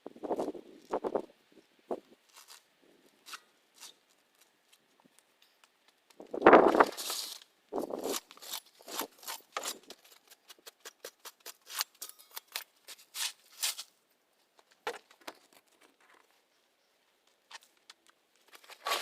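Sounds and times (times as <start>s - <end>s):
plants crackling and ripping: 2.3s - 4.8s.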